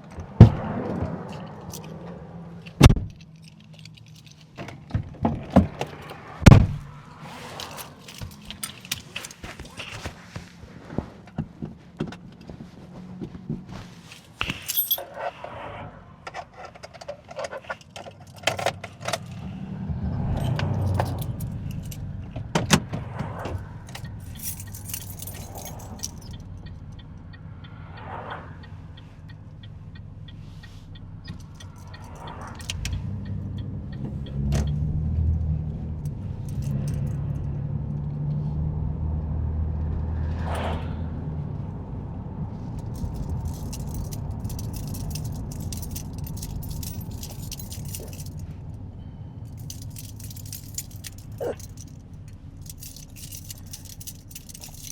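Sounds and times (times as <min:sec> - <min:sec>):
engine and road rumble: 0:00.0 - 0:54.9
small clicks and rattles: 0:42.8 - 0:48.6, 0:49.5 - 0:54.9.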